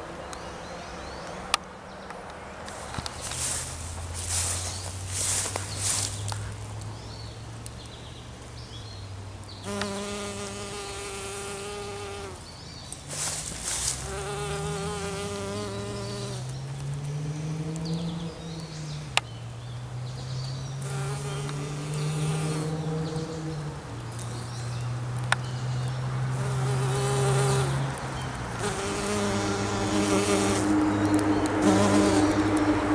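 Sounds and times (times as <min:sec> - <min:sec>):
rustle: 0:00.0 - 0:32.9
flying insect buzzing: 0:09.6 - 0:12.4, 0:13.1 - 0:16.6, 0:20.8 - 0:23.0, 0:26.3 - 0:28.0, 0:28.6 - 0:32.9.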